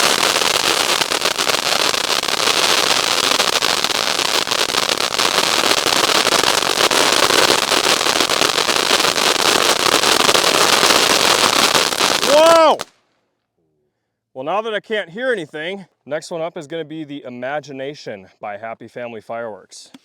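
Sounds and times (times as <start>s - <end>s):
firework fountains crackling: 0.0s - 13.0s.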